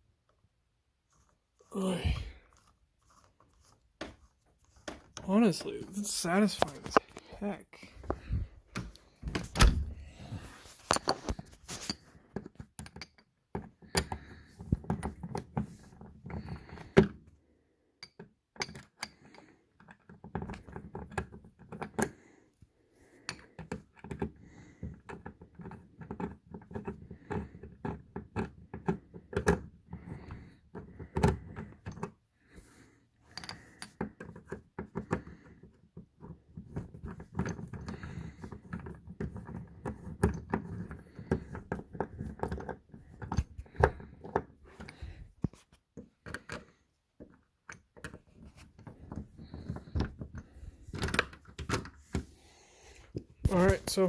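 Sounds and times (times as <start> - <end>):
door lock clicking and rattling: 8.7 - 10.0.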